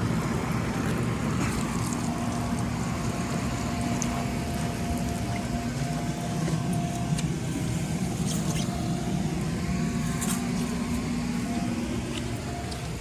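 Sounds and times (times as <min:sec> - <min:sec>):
electric blower motor humming: 0:00.0 - 0:13.0.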